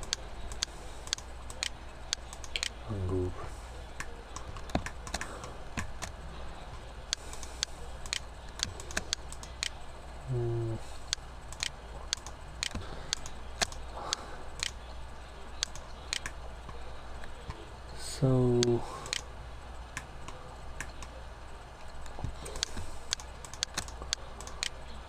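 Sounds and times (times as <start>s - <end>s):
mouse and keyboard clicks: 0.0s - 2.8s, 7.1s - 9.8s, 11.1s - 14.8s, 22.0s - 24.8s
steady low hum: 0.0s - 25.0s.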